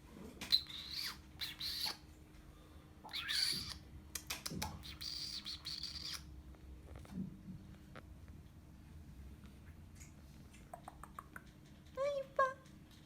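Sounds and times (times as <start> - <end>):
kitten mewing: 3.1 - 6.3.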